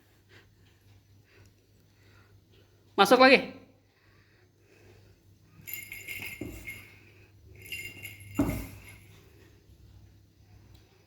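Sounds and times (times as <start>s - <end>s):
small bell jingling: 5.5s - 9.5s.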